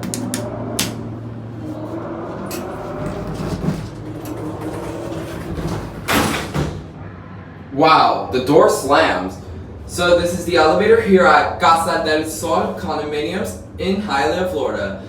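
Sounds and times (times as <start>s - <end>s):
elevator doors slamming shut: 0.0s - 7.2s
elevator humming: 0.0s - 15.0s.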